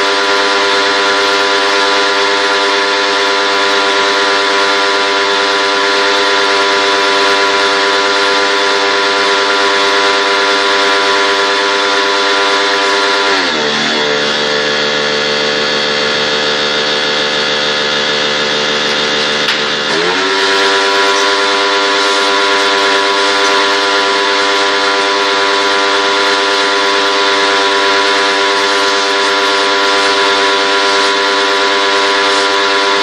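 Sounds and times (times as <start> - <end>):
motor humming: 11.3 - 33.0.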